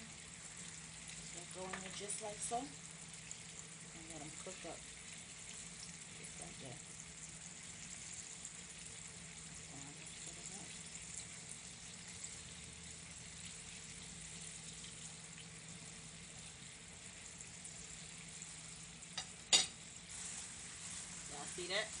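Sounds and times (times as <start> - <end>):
chicken sizzling in hot oil: 0.0 - 22.0
small oil crackles: 0.0 - 22.0.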